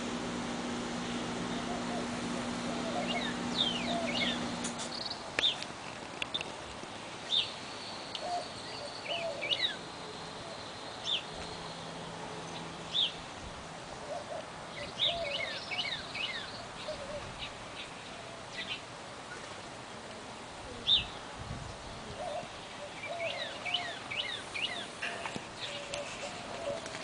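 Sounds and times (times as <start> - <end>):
low steady hum: 0.0 - 5.6
small birds chirping: 1.0 - 6.5, 7.2 - 13.2, 14.1 - 19.6, 22.2 - 27.0.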